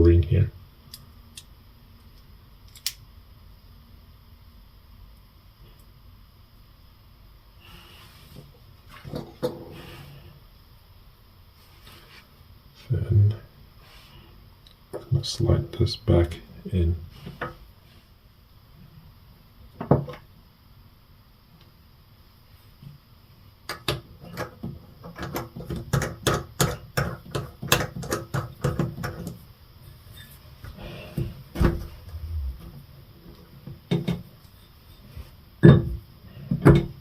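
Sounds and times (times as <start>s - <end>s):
faucet parts clicking and knocking: 23.7s - 29.3s.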